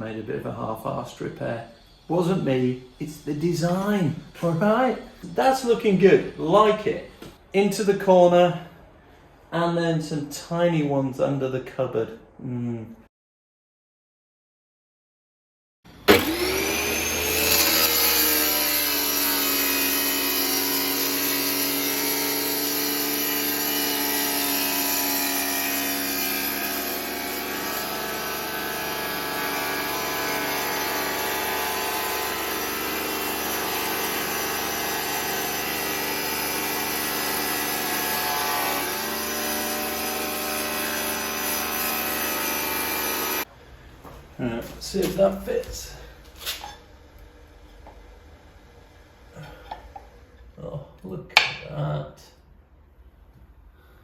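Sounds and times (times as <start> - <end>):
electric tile saw whining: 15.9 - 43.5.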